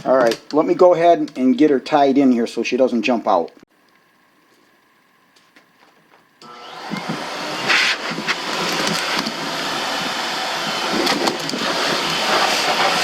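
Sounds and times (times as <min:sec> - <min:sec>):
pet dryer blower running: 0:06.4 - 0:13.0.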